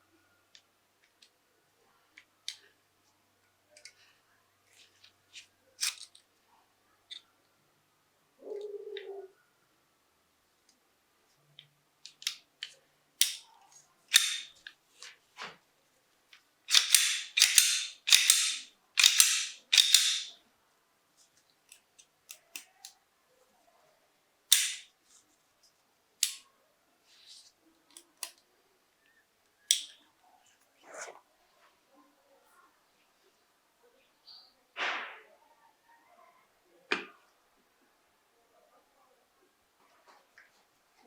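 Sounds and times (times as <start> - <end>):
pistol metallic clicks: 13.2 - 13.4, 14.1 - 14.6, 16.7 - 20.4, 24.5 - 24.9, 26.2 - 26.4, 29.7 - 30.0
pistol slide sliding strokes: 14.1 - 14.6, 16.7 - 20.4, 24.5 - 24.9.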